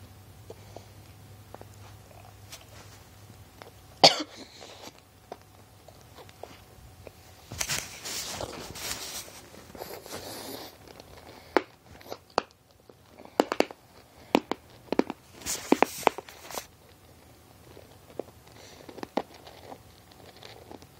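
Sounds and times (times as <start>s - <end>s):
mints crunching: 0.5s - 20.9s
breathy mouth sounds: 9.6s - 12.4s.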